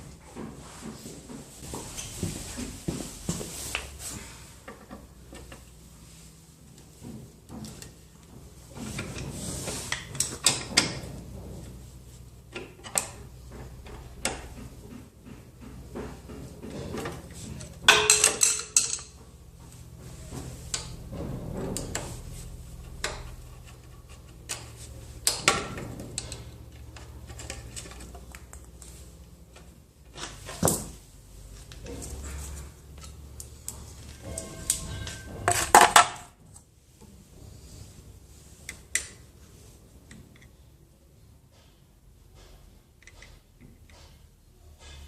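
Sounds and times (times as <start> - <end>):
metal tools clinking and clanking: 16.3 - 19.4, 31.8 - 36.2.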